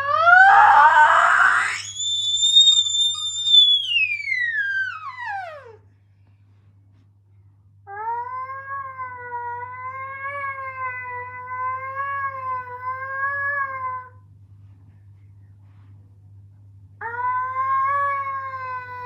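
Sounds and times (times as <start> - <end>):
faint steady hum: 0.0 - 19.0
wavering alarm tone: 0.2 - 5.8.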